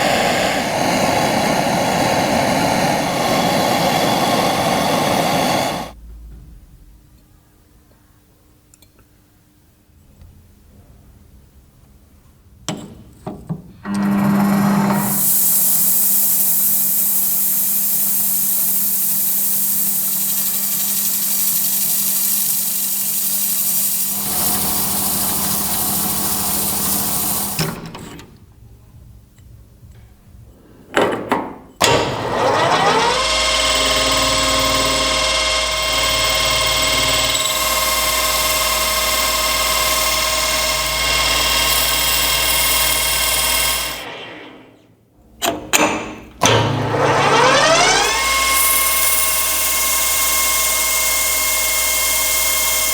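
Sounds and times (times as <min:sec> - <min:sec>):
electric power tool running: 0:00.0 - 0:06.0, 0:13.9 - 0:27.8, 0:31.8 - 0:44.2, 0:46.4 - 0:52.9
motor spinning up whine: 0:00.0 - 0:06.0, 0:13.9 - 0:27.8, 0:31.8 - 0:44.7, 0:46.4 - 0:52.9.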